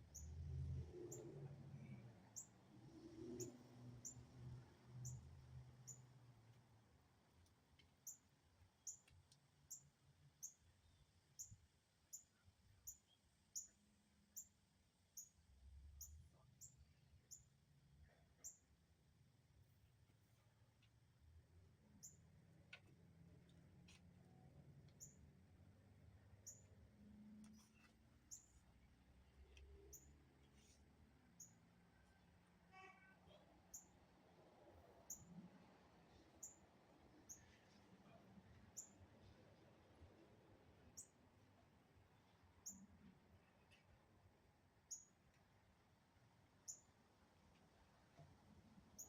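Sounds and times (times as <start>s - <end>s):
faint high chirps: 0.0s - 4.2s, 5.0s - 6.2s, 8.0s - 17.6s, 24.9s - 25.2s, 26.4s - 28.6s, 31.4s - 34.0s, 44.9s - 45.2s, 46.6s - 46.9s.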